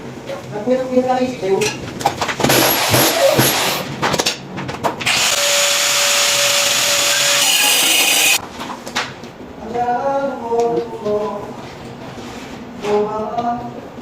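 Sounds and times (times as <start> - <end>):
handheld power tool running: 5.0 - 8.4.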